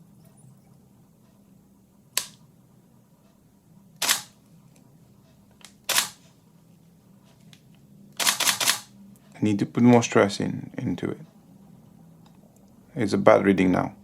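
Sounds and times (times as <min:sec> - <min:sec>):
camera shutter clicking: 0:04.0 - 0:04.3, 0:05.9 - 0:06.2, 0:08.2 - 0:08.9.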